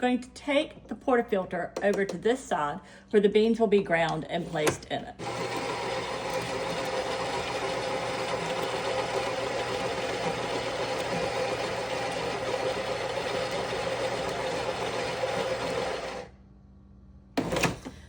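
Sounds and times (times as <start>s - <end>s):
coffee grinder running: 5.2s - 16.3s.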